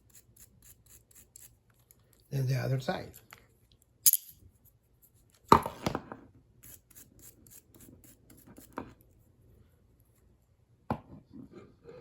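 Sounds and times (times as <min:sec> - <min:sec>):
brush scrubbing metal handcuffs: 0:00.0 - 0:02.4, 0:06.6 - 0:08.8
metallic clatter of handcuffs: 0:04.0 - 0:04.4.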